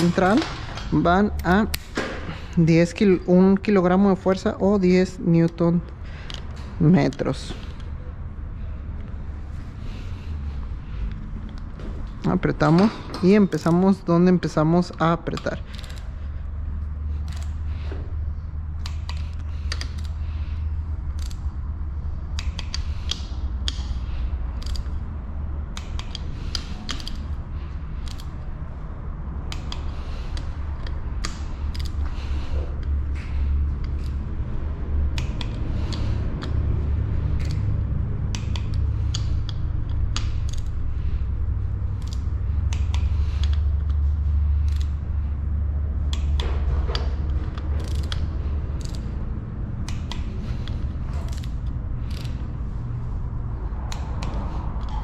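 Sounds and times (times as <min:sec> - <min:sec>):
steady low hum: 0:00.0 - 0:55.0
wrench ratcheting and clicking: 0:12.7 - 0:18.0, 0:18.7 - 0:28.8, 0:29.4 - 0:53.2, 0:53.8 - 0:55.0.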